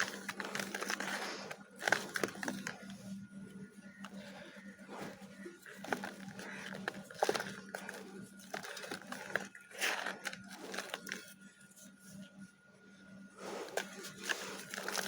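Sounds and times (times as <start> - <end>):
clay chunks crumbling: 0.0 - 2.9, 3.9 - 11.3, 13.6 - 15.0.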